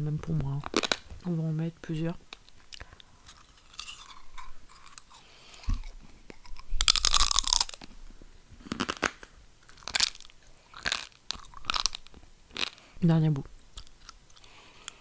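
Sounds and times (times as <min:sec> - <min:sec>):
brittle food crunching when chewed: 0:00.6 - 0:01.1, 0:02.3 - 0:08.0, 0:08.6 - 0:12.9, 0:13.6 - 0:15.0.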